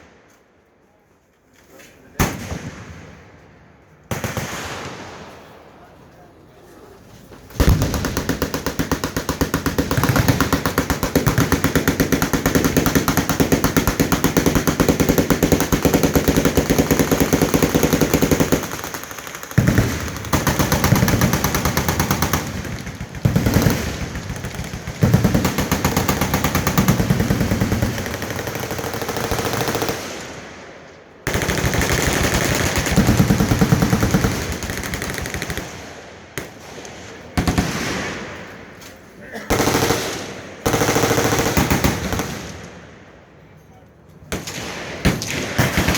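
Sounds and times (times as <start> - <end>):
automatic machine-gun fire: 7.6 - 30.2, 31.3 - 35.8, 39.5 - 42.6, 44.4 - 45.9.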